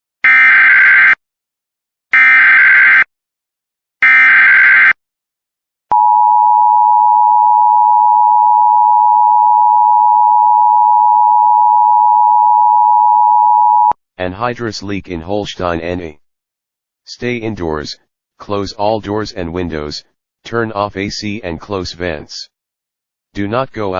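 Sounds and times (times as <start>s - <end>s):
steady attention tone: 5.9s - 13.9s.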